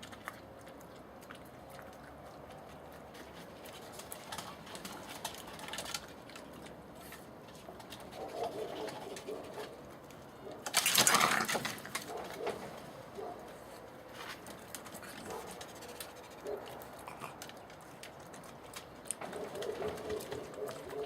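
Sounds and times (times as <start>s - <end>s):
fox harsh rasping cry: 10.6s - 12.6s, 14.8s - 17.5s.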